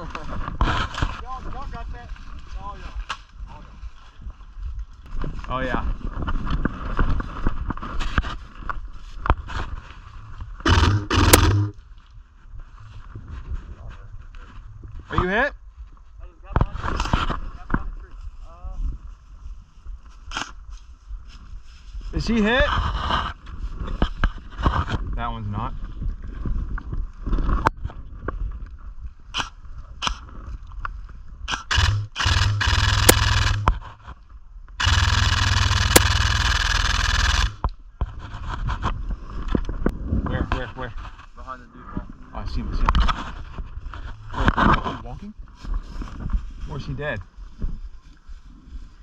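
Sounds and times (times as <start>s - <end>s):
scraping against microphone: 0.0s - 3.7s, 5.1s - 11.9s, 12.5s - 15.3s, 16.5s - 18.5s, 20.1s - 28.1s, 34.8s - 49.0s
sharp click: 10.7s - 11.8s, 31.5s - 33.8s, 34.8s - 37.8s
clothing rustling on microphone: 43.0s - 49.0s.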